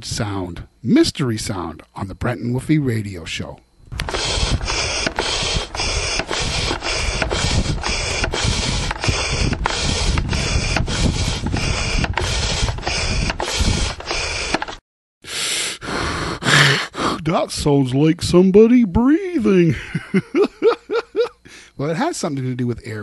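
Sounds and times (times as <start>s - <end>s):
regular clicking: 3.9s - 14.8s
steady rushing of air: 3.9s - 14.8s.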